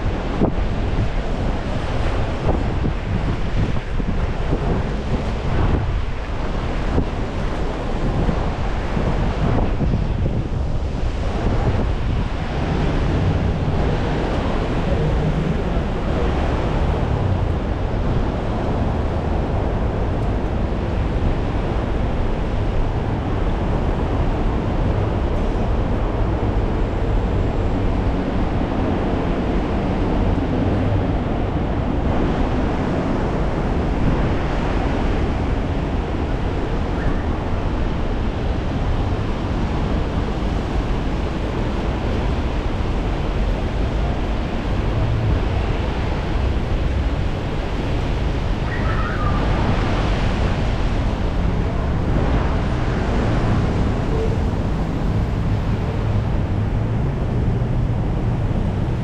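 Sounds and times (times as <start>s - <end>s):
road traffic: 0.0s - 59.0s
wind buffeting microphone: 0.0s - 59.0s.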